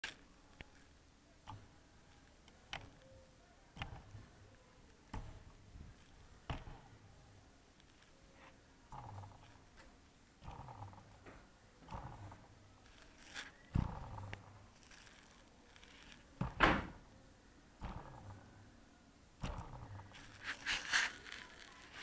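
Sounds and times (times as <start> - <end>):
faint clicks and knocks: 0.0 - 3.2.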